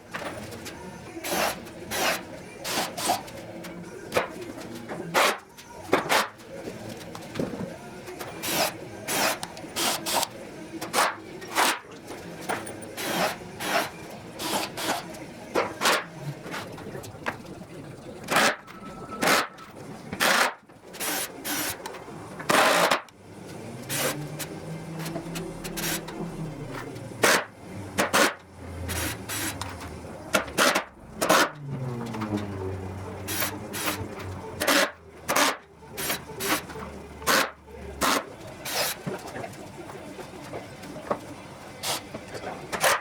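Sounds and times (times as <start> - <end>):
workshop knocks and clatters: 4.1 - 6.4, 27.2 - 32.6.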